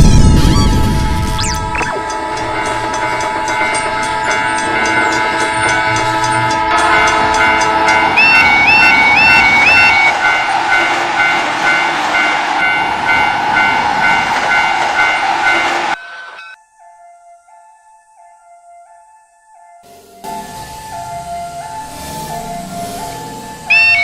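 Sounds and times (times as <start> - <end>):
train passing rushing: 0.0 - 16.0, 19.9 - 24.0
crossing warning bells clanging: 0.0 - 24.0
train horn toots: 2.0 - 11.6, 19.9 - 24.0.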